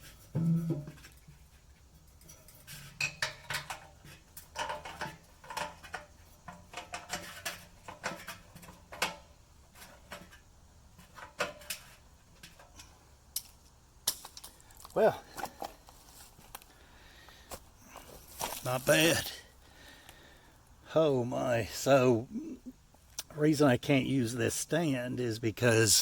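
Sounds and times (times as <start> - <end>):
metal parts clinking and rattling: 2.1 - 9.2.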